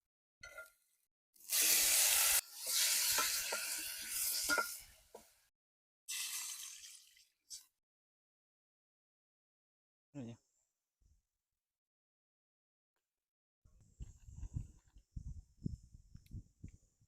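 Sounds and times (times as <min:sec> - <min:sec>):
food sizzling as it fries: 0:01.4 - 0:05.4, 0:06.1 - 0:07.2.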